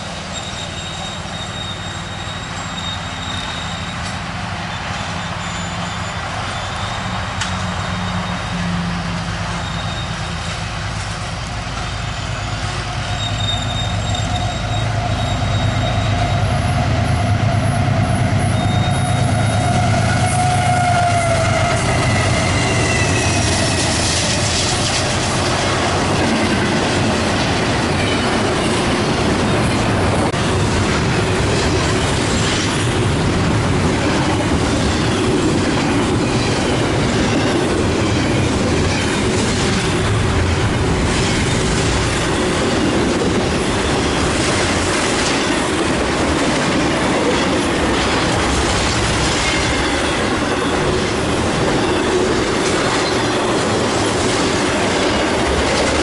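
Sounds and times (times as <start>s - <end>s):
faint wheel squeal: 0.2s - 10.6s, 11.9s - 24.1s, 51.7s - 53.6s
train wheels clicking over rail joints: 9.1s - 56.0s.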